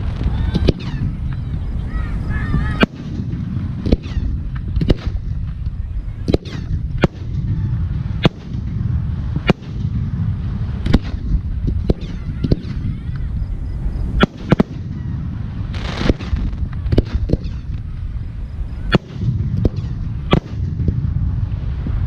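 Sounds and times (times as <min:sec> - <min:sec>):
continuous low rumble: 0:00.0 - 0:22.0
firework shells bursting: 0:02.5 - 0:13.4, 0:14.1 - 0:21.2.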